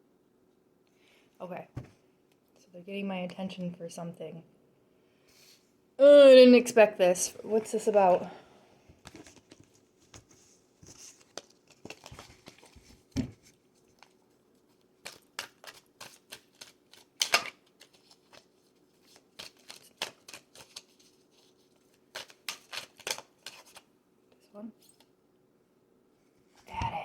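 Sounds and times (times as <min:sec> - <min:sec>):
cards snapping while shuffled: 0:15.0 - 0:18.5, 0:19.1 - 0:21.0, 0:22.1 - 0:23.8.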